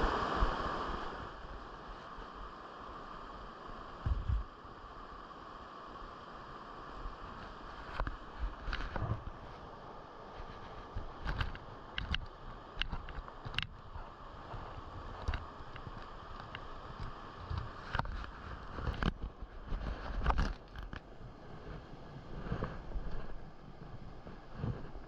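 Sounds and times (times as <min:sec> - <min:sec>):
mountain stream running: 0:00.0 - 0:25.0
sharp clicks and knocks: 0:10.9 - 0:13.8.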